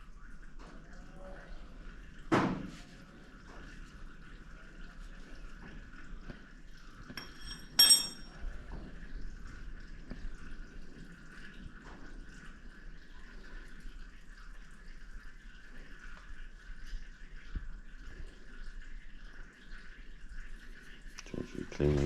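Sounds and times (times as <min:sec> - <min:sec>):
faint steady hum: 0:00.0 - 0:22.0
metal clattering: 0:07.2 - 0:08.3
ringing metallic clink: 0:07.2 - 0:08.3.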